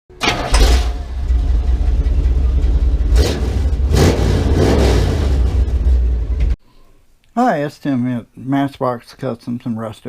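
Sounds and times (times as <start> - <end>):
vehicle engine rumbling: 0.2 - 6.6.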